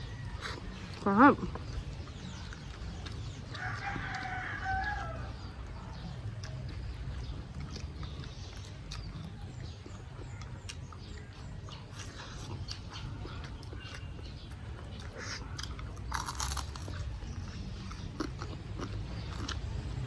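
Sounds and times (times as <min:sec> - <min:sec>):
rooster crowing: 0:03.6 - 0:05.5.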